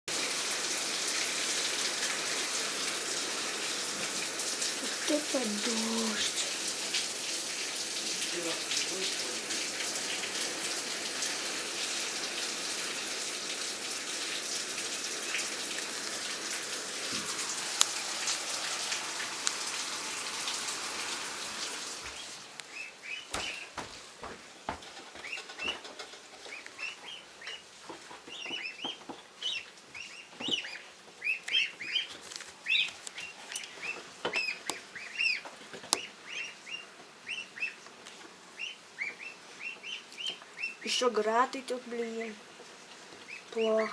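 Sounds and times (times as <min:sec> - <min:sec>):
water drips: 0:00.1 - 0:41.0
steady rain falling: 0:00.1 - 0:43.9
small birds chirping: 0:21.9 - 0:23.9, 0:26.4 - 0:37.8, 0:38.6 - 0:41.1.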